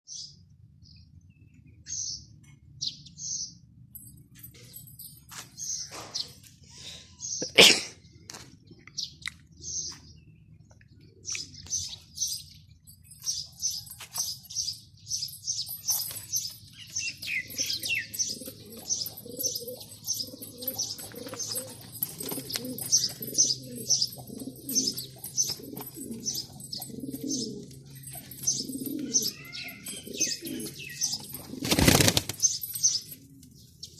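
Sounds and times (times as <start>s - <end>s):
small bird chirping: 8.8s - 33.9s
pigeon cooing: 17.2s - 32.8s.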